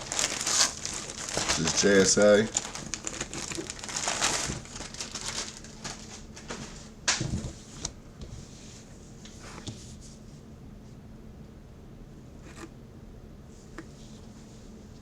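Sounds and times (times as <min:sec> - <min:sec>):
plastic packaging crinkling: 0:00.0 - 0:07.2.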